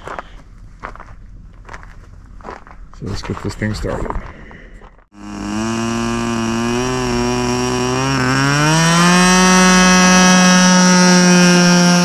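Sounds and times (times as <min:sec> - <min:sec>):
model airplane engine buzzing: 0:05.2 - 0:12.0.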